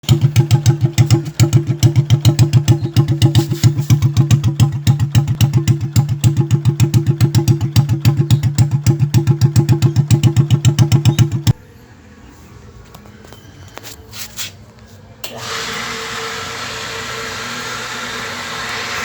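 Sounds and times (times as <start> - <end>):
motorcycle engine idling: 0.0 - 11.6.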